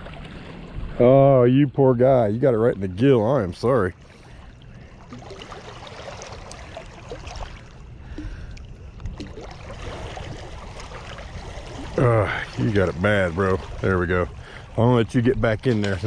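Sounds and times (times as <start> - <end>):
water: 0.0 - 16.0
wind: 0.0 - 16.0.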